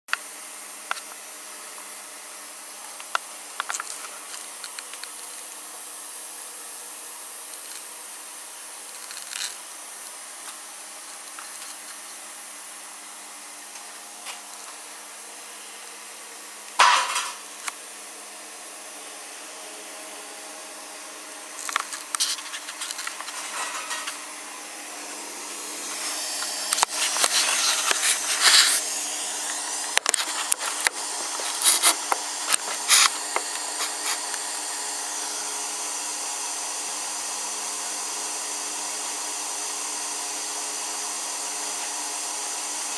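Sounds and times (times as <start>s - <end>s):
plasma cutter humming: 0.2s - 37.3s
arc cutting metal crackling hiss: 7.3s - 12.4s, 21.4s - 36.0s.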